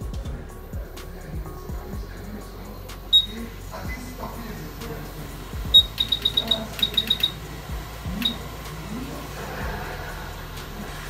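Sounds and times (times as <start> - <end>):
steady low hum: 0.0 - 11.0
short high electronic beeps: 3.2 - 3.4, 5.8 - 7.4, 8.2 - 8.4.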